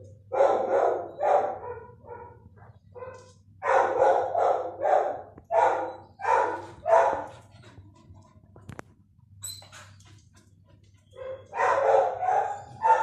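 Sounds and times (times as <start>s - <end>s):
dog barking: 0.3s - 7.3s, 11.2s - 13.0s.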